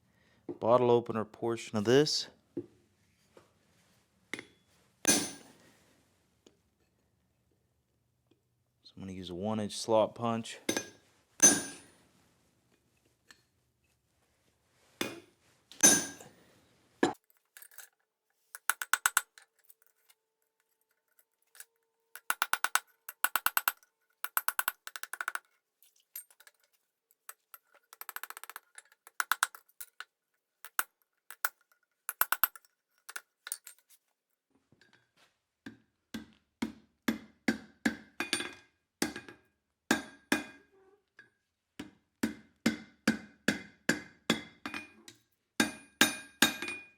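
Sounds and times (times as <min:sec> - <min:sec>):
hammer striking ringing steel: 0:05.1 - 0:05.4, 0:10.7 - 0:11.9, 0:15.8 - 0:16.2.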